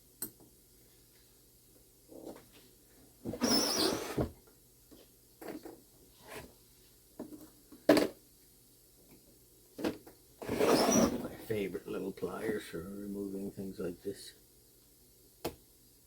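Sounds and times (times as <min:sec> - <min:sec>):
rustling and scraping of parts: 0:02.1 - 0:08.2.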